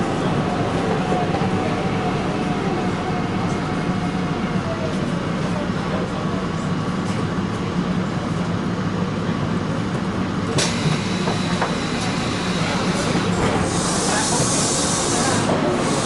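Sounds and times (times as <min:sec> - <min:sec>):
train low rumble: 0:00.0 - 0:16.0
hiss: 0:10.6 - 0:16.0.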